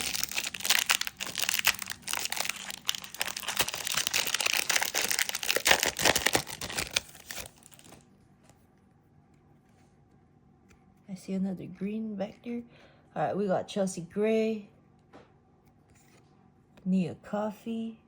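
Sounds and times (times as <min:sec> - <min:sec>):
wrapper tearing and crinkling: 0:00.0 - 0:08.1.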